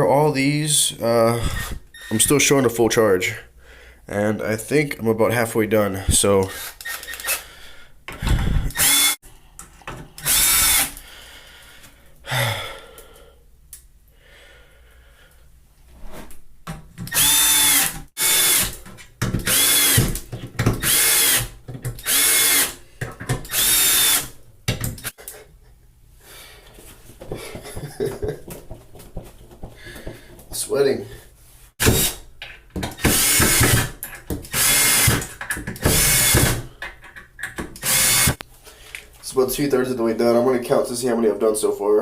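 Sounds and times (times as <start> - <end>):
cordless screwdriver whining: 6.5 - 7.4, 8.3 - 9.2, 10.2 - 11.0, 17.1 - 18.8, 19.5 - 20.1, 20.8 - 22.8, 23.5 - 24.3, 34.5 - 35.2, 37.8 - 38.4.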